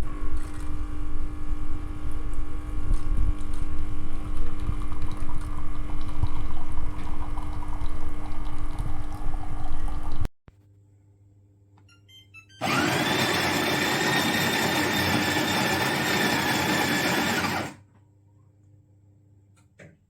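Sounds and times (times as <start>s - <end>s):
coffee machine pump humming: 0.2s - 10.3s, 12.6s - 17.8s
liquid pouring: 4.3s - 10.3s.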